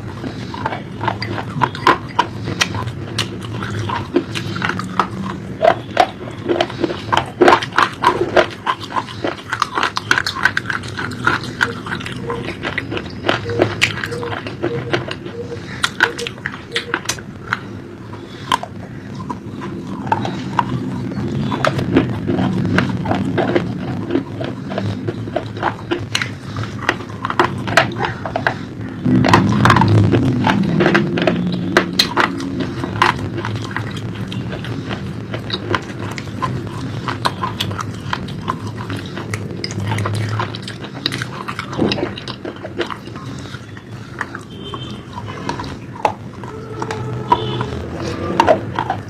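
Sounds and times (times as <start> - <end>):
crunchy food being chewed: 0.0 - 49.0
low steady hum: 0.0 - 49.0
steady low rumble: 0.0 - 49.0
wet mouth clicks: 0.0 - 49.0.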